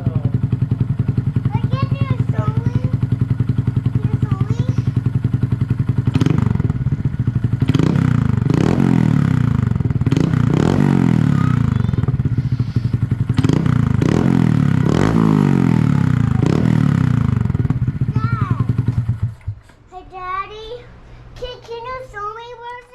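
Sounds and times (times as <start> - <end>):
motorcycle engine revving: 0.0 - 22.9.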